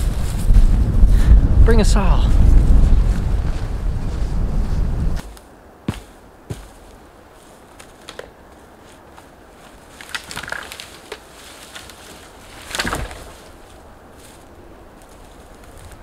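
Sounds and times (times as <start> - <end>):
crunching in snow: 0.0 - 1.0, 2.4 - 16.0
small wood cracks: 7.8 - 8.4, 9.6 - 14.4.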